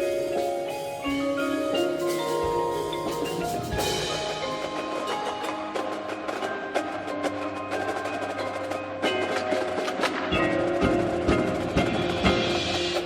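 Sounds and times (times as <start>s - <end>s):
heavy drum strokes: 0.0s - 8.6s
mallet keyboards ringing: 0.0s - 13.0s.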